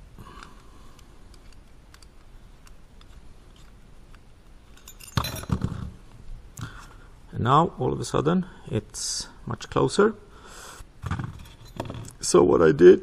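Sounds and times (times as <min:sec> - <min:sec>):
small hard parts clinking: 0:04.6 - 0:06.0.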